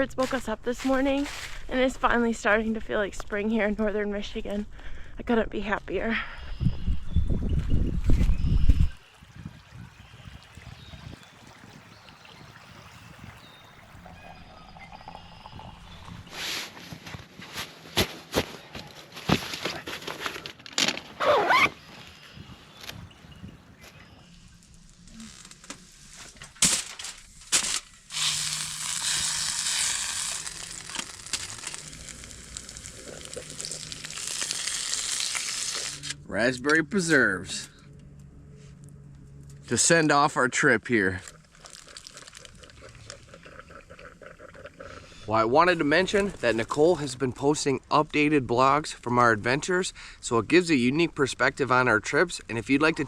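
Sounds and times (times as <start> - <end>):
high bird chirps: 6.4 - 9.0
river water flowing: 9.0 - 14.2
food sizzling in a hot pan: 28.1 - 36.0.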